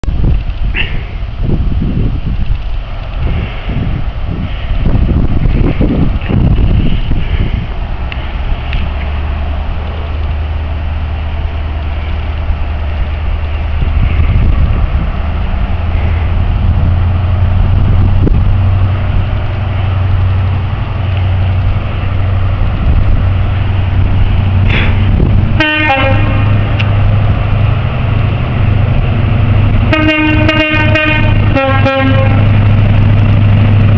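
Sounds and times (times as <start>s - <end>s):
train diesel engine droning: 0.1s - 33.9s
train horn: 25.6s - 26.6s, 29.9s - 32.6s.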